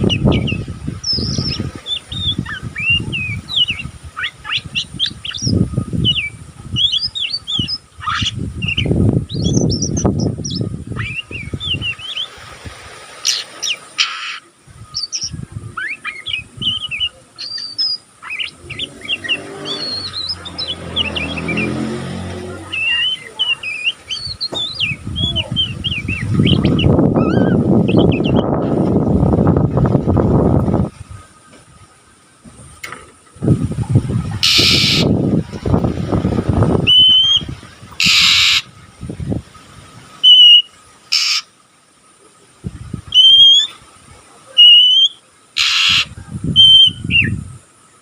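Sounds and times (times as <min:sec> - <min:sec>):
bird chirping and twittering: 0:00.0 - 0:12.4, 0:13.2 - 0:31.5, 0:33.4 - 0:41.5, 0:42.8 - 0:47.6
low rumbling noise: 0:00.0 - 0:13.1, 0:14.5 - 0:40.2
engine hum passing: 0:18.2 - 0:27.2.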